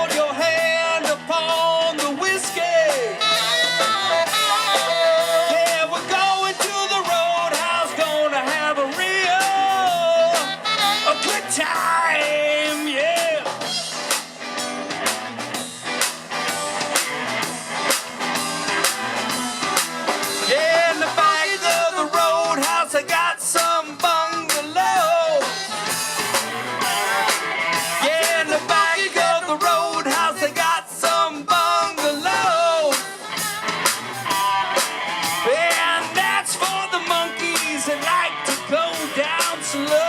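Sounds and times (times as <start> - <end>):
bass guitar: 0.0 - 40.0
drum kit: 0.0 - 40.0
electric guitar: 0.0 - 40.0
person singing lead: 4.4 - 14.0.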